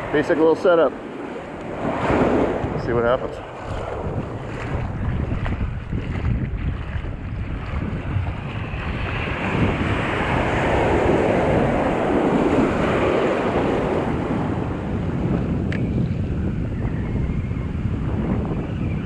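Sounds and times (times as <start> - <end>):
ocean surf washing ashore: 0.0 - 5.0, 8.2 - 15.2
wind buffeting microphone: 0.0 - 19.0.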